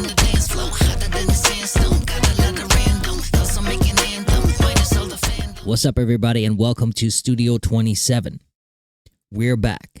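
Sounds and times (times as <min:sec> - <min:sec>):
kick drum: 0:00.0 - 0:05.6
heavy bass line: 0:00.0 - 0:05.8
hip-hop beat: 0:00.0 - 0:05.8.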